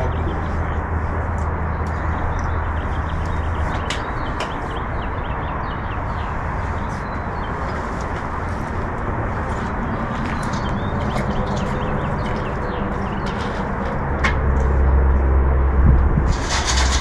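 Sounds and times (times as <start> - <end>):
steady background noise: 0.0 - 17.0
small birds chirping: 9.6 - 13.7.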